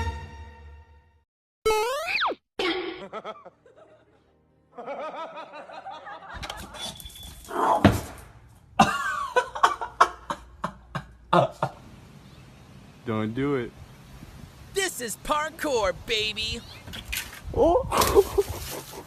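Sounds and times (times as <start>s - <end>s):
background music: 0.0s - 1.2s, 2.6s - 6.4s
people laughing: 2.9s - 6.8s, 8.8s - 11.8s.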